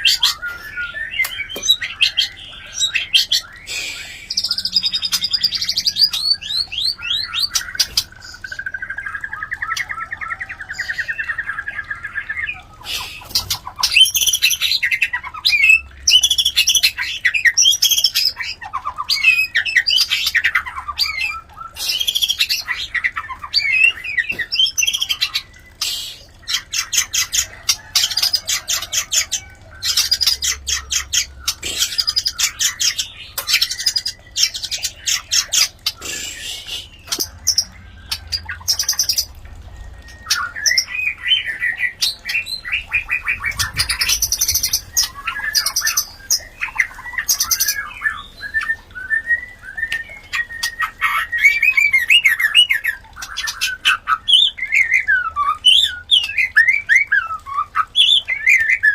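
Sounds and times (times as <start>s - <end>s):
bird whistled song: 28.1s - 58.9s.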